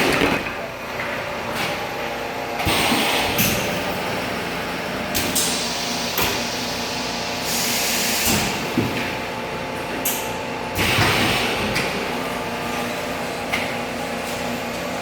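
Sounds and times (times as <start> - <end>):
pneumatic hisses and clacks: 5.1 - 9.2.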